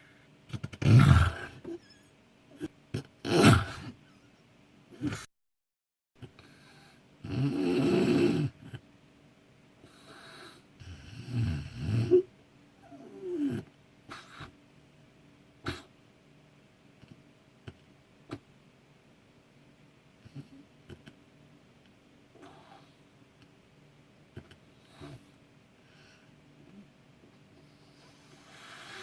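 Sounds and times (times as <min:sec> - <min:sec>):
person snoring: 0:28.0 - 0:29.0.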